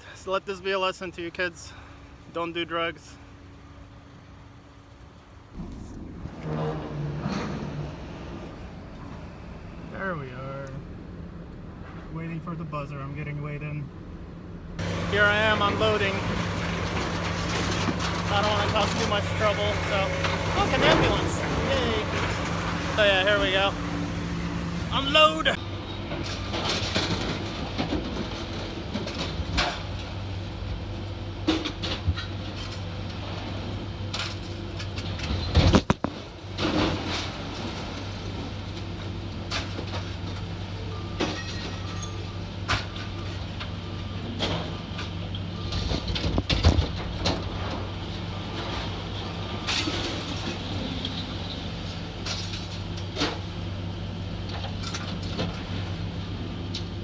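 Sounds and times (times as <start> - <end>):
low engine hum: 3.2 - 26.6
scrap metal clanking: 5.6 - 8.3, 14.8 - 24.2.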